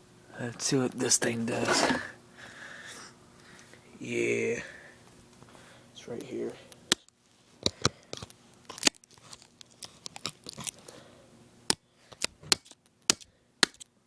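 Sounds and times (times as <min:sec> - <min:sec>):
saw knocking and scraping: 0:01.2 - 0:02.1.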